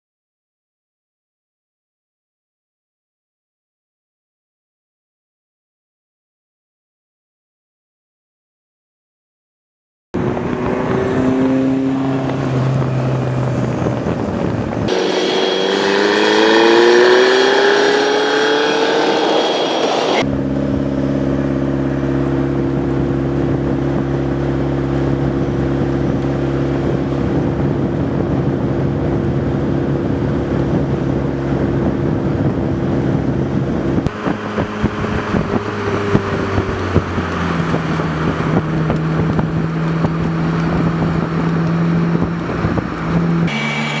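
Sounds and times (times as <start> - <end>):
car engine running and revving: 10.2 - 44.0.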